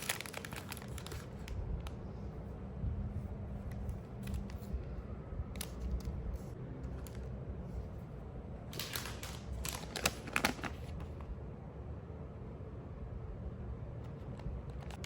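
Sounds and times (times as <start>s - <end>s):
snack packaging crinkling: 0.0s - 1.6s, 8.7s - 11.2s, 14.2s - 15.0s
steady low hum: 0.0s - 15.0s.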